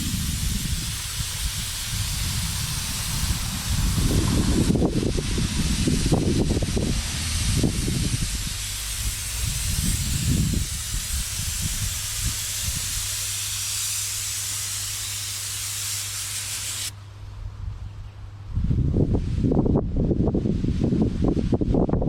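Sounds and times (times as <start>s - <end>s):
paint spray gun hissing: 0.0s - 17.0s
steady low hum: 0.0s - 21.4s.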